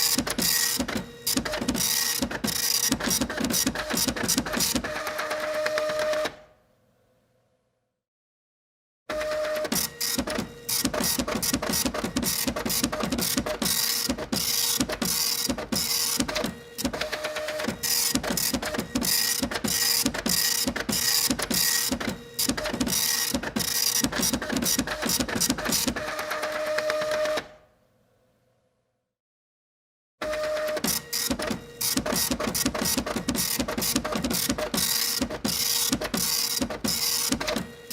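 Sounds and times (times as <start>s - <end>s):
printer mechanical hum: 0.0s - 6.3s, 9.1s - 27.4s, 30.2s - 37.9s
printer clattering: 9.8s - 27.3s, 30.8s - 37.8s.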